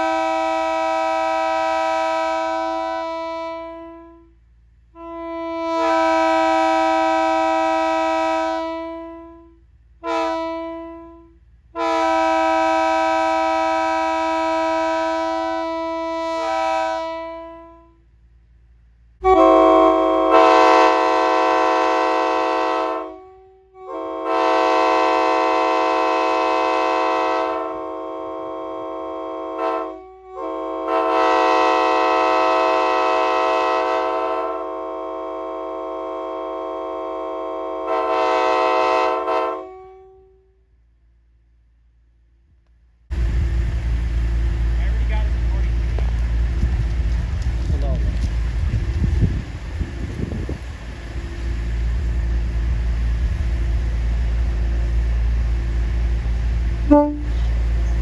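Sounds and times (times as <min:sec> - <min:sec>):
train air horn blasts: 0:00.0 - 0:18.2, 0:19.2 - 0:40.8, 0:56.8 - 0:58.0.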